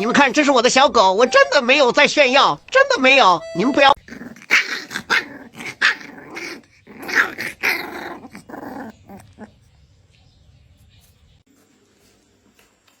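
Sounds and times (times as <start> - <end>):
puppy growling and barking: 4.0 - 9.7.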